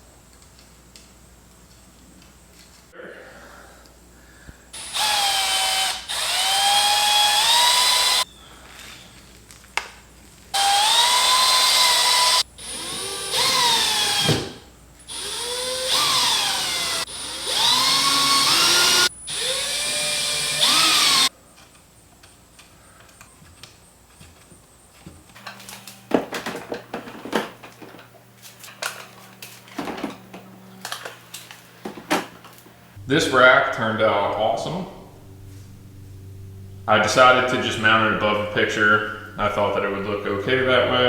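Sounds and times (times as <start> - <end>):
power drill motor whine: 4.8 - 8.3, 10.6 - 21.3.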